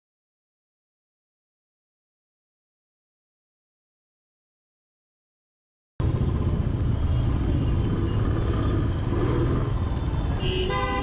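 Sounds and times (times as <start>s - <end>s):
road traffic rumble: 6.0s - 11.0s
wind: 6.0s - 11.0s.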